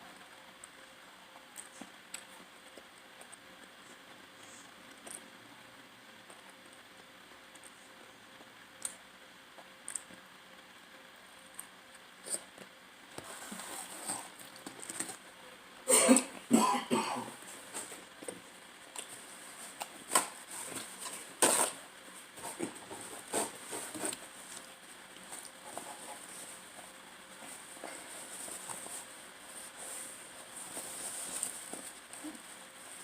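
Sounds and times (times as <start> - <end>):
person coughing: 15.9 - 17.4.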